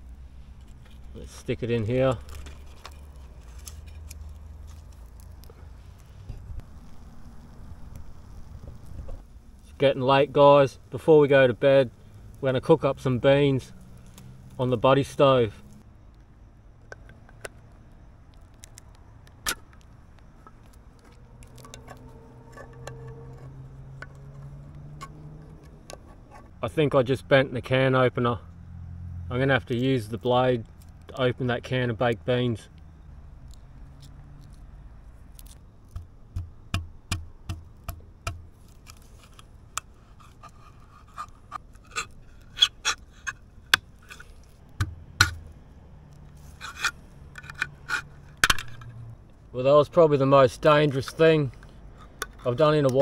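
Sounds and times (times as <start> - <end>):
can opener clicking and scraping: 21.4 - 26.6, 46.5 - 49.0
knife scraping tin can lid: 40.0 - 43.4, 46.4 - 48.9.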